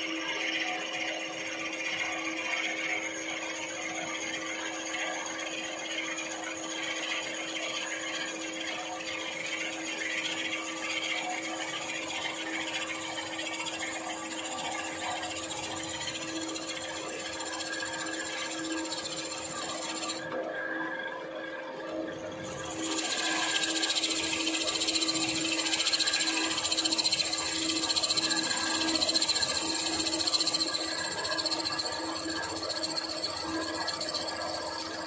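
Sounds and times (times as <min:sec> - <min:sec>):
drill bit cutting metal: 0:00.4 - 0:20.3, 0:22.1 - 0:35.0
drill motor hum: 0:11.5 - 0:20.3, 0:22.2 - 0:35.0.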